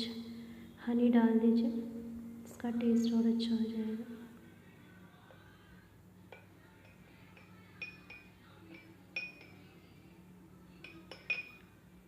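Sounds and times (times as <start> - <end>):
spoon clinking against cup: 6.3 - 9.7, 10.8 - 11.7.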